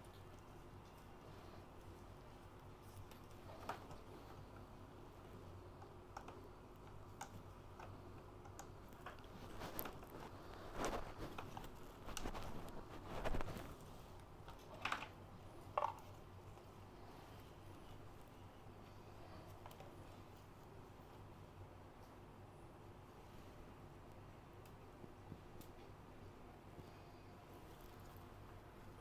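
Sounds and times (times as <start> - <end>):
light clicks of computer parts: 0.0 - 21.1, 24.1 - 26.0
scraping and rustling: 8.9 - 18.3.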